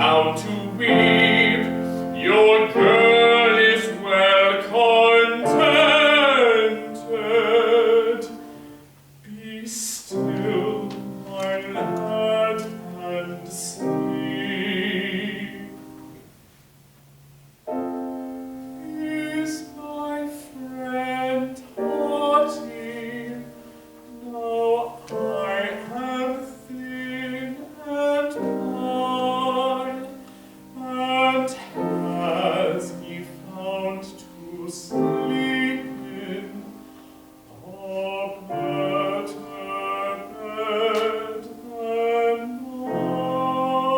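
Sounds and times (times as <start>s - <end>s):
operatic solo singing: 0.0s - 8.5s, 18.8s - 43.9s
piano accompaniment: 0.0s - 16.4s, 17.6s - 43.9s.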